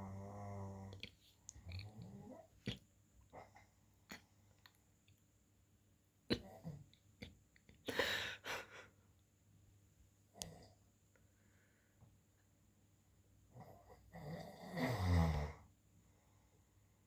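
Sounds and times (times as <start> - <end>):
man snoring and snorting: 14.1 - 15.6.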